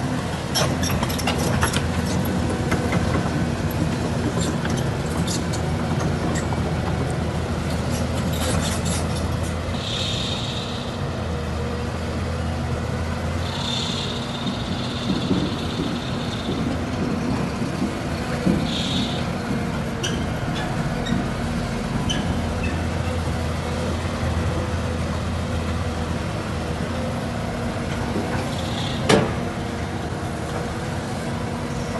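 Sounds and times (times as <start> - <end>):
heavy diesel machinery running: 0.0 - 31.9.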